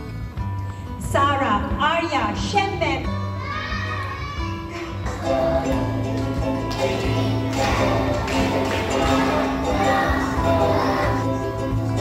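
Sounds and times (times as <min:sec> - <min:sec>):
song with sustained notes: 0:05.1 - 0:12.0.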